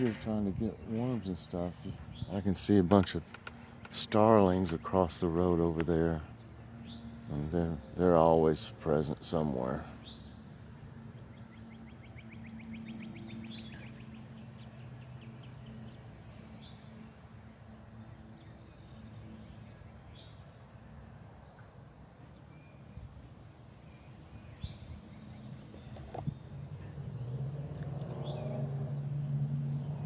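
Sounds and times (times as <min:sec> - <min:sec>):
birds whistling: 0:00.0 - 0:02.7, 0:09.5 - 0:17.4, 0:22.3 - 0:30.0.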